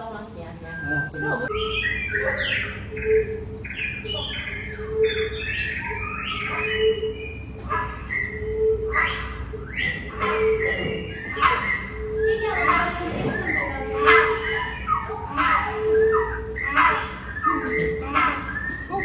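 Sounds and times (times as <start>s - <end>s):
birds chirping and squawking: 0.0s - 19.0s.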